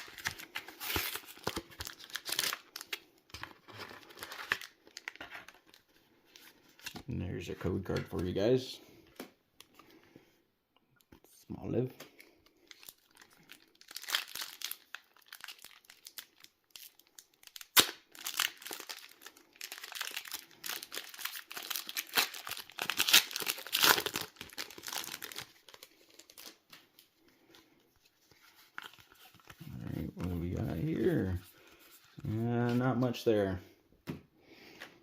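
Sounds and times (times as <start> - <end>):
foil wrapper crinkling and tearing: 0.0 - 5.6, 12.6 - 27.0.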